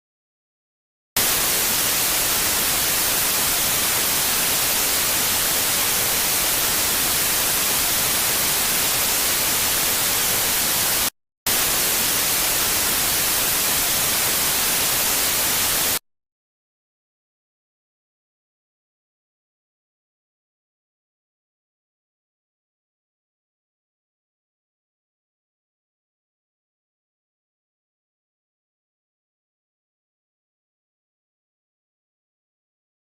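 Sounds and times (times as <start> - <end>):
white-noise static hiss: 1.2 - 16.0.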